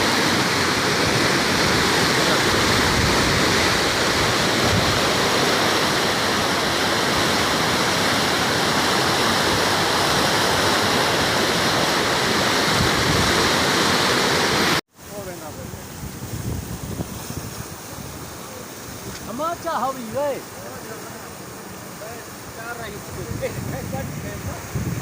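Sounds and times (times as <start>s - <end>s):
river floodwater roaring: 0.0s - 25.0s.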